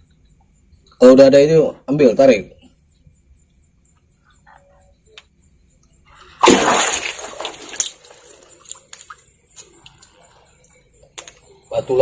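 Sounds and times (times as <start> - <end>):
water splashing and sloshing: 6.2 - 10.1.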